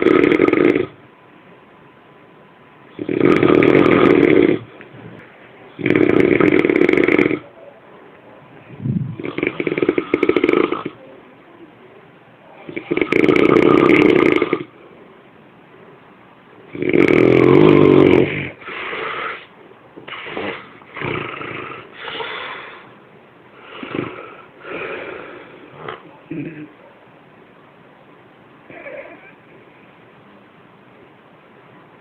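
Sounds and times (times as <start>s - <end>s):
person snoring loudly: 0.0s - 1.0s, 3.0s - 4.7s, 5.8s - 7.5s, 9.1s - 11.0s, 12.7s - 14.7s, 16.7s - 19.5s, 20.1s - 22.0s, 23.7s - 26.0s.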